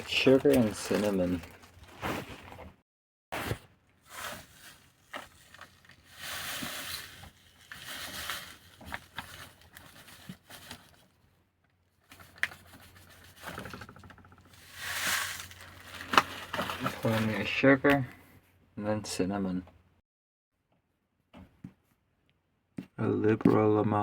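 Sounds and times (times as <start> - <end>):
bag rustling and crinkling: 0.0 - 2.8, 3.4 - 11.1, 14.5 - 17.6.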